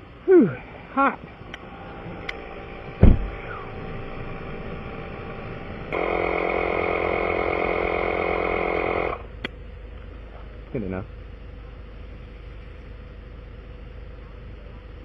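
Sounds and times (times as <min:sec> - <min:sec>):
steady whirring hum: 0:00.0 - 0:15.0
vehicle engine idling: 0:00.0 - 0:15.0
single thump: 0:03.0 - 0:03.5.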